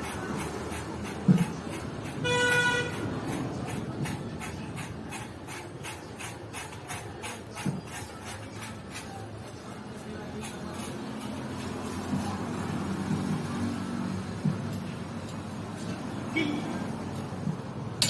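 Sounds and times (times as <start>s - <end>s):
road traffic: 0.0s - 18.0s
vehicle horn toot: 2.2s - 3.0s.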